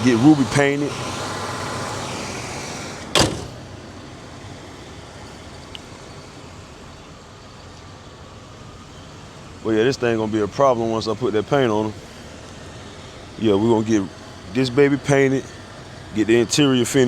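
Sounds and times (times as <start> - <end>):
car door shutting: 2.6 - 3.8.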